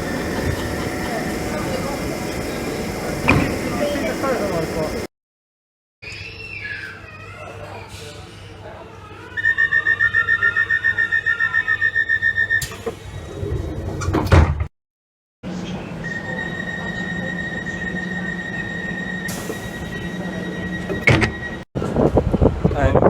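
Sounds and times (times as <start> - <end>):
sliding doors closing with a thud: 0.0 - 5.0, 12.6 - 14.7, 19.3 - 21.6
door-closing alarm beeping: 0.0 - 5.1, 12.4 - 13.4, 16.1 - 21.7
low hum: 0.0 - 5.1
steady high tone: 0.0 - 5.1, 15.8 - 21.6.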